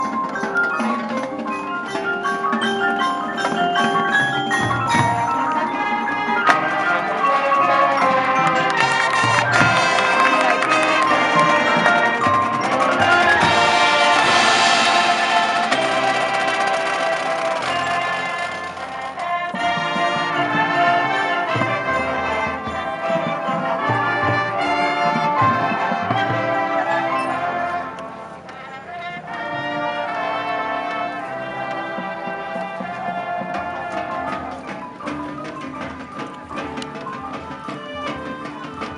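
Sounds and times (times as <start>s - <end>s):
mallet percussion music: 0.0s - 38.9s
trumpets and trombones playing chords: 4.1s - 34.8s.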